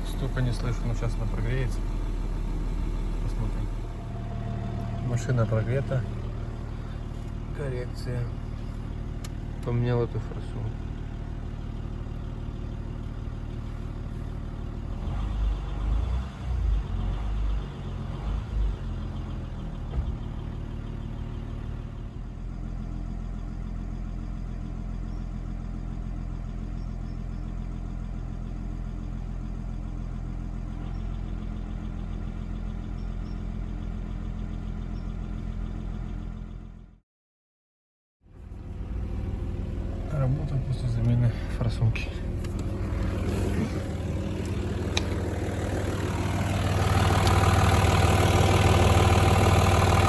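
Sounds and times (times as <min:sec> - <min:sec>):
diesel engine idling: 0:00.0 - 0:37.0, 0:38.3 - 0:50.0
low engine rumbles: 0:00.0 - 0:37.0, 0:38.3 - 0:50.0.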